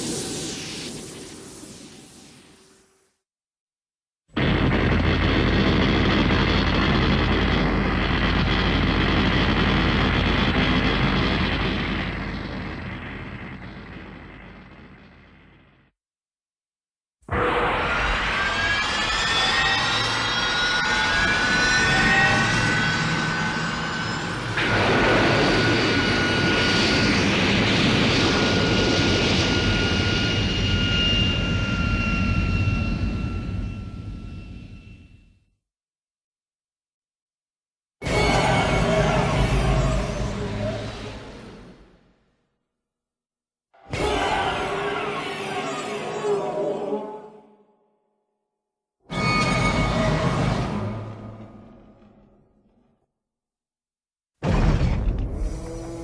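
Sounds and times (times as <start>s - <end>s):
loud thruster rush: 4.4s - 15.8s, 17.3s - 34.8s, 38.0s - 42.0s
high mechanical whine: 4.4s - 15.9s, 17.4s - 35.3s
mechanical drone with deep hum: 4.4s - 15.9s.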